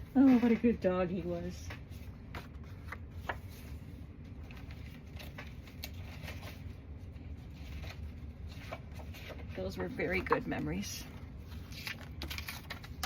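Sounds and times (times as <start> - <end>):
low steady hum: 0.0 - 13.0
paper rustling: 0.1 - 13.0.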